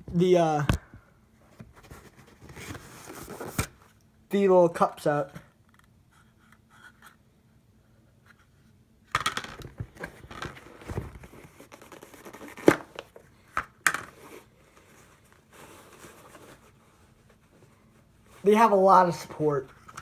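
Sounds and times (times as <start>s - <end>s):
shoe packing material rustling: 9.7s - 13.3s.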